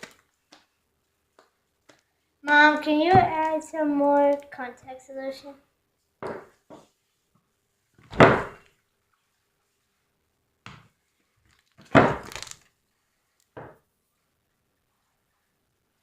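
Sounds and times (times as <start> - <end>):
knocks and thuds: 3.1 - 3.4, 8.1 - 8.6.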